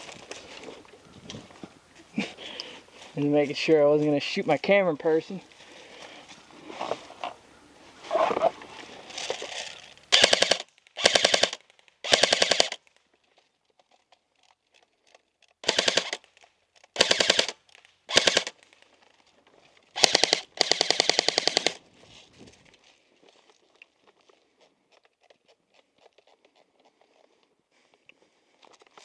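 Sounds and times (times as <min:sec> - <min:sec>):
airsoft rifle firing bursts: 0:10.1 - 0:12.8, 0:15.6 - 0:16.2, 0:17.0 - 0:18.6, 0:20.0 - 0:21.8.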